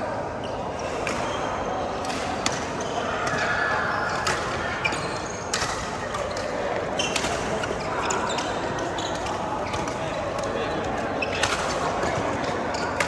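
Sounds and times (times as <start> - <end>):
court shoes squeaking: 0.4 - 13.0
rackets hitting shuttlecock: 5.5 - 7.8.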